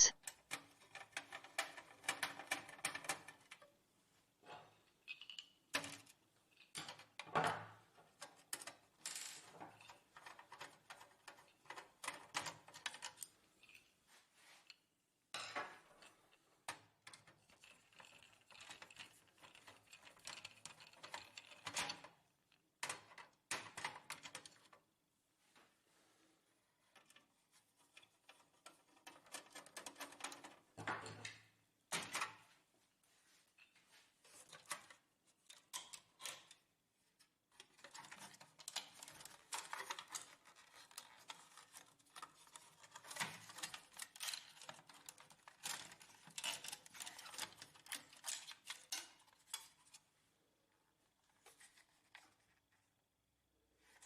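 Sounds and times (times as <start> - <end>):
screws and parts handled: 8.1 - 14.8, 15.8 - 22.2, 33.6 - 50.1, 51.2 - 52.7.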